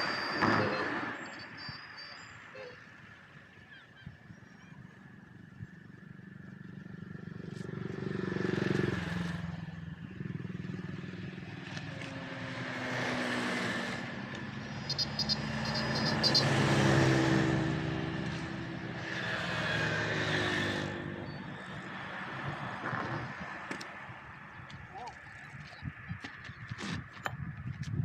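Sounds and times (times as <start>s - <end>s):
vehicle engine running: 14.2s - 26.3s.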